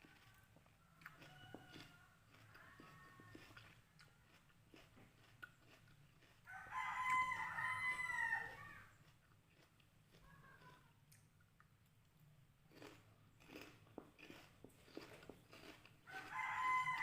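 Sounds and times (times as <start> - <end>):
rooster crowing: 1.0 - 3.0, 6.5 - 8.9, 16.0 - 17.0.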